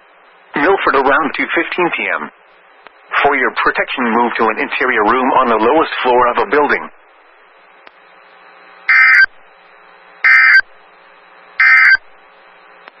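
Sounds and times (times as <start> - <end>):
harsh digital data tones: 8.9 - 9.3, 10.2 - 10.7, 11.6 - 12.1.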